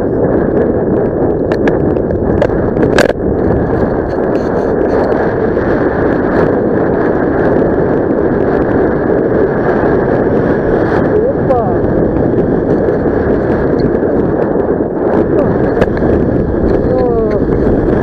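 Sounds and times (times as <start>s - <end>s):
wind buffeting microphone: 0.0s - 18.0s.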